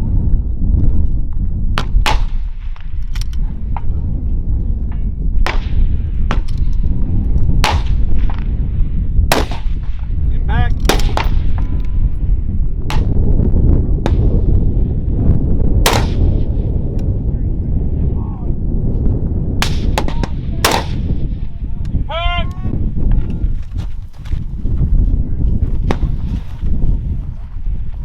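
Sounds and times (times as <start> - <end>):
low rumble: 0.0 - 28.0
rifle shots: 7.6 - 8.5, 9.3 - 10.1, 10.8 - 11.7, 15.8 - 16.5, 19.6 - 21.2.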